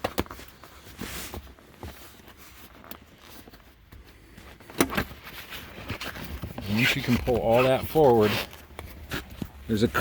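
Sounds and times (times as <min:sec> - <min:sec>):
rustling and light knocks: 0:00.0 - 0:07.4.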